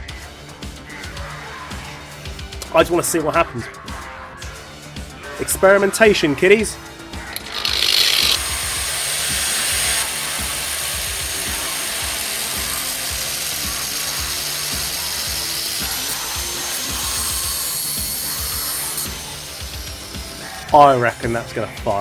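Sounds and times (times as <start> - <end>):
angle grinder grinding plastic: 7.2 - 21.6.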